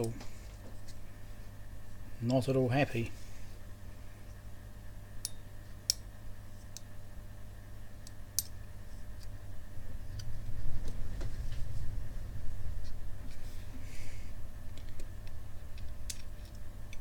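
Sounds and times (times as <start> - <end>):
low rumble: 9.7 - 13.3.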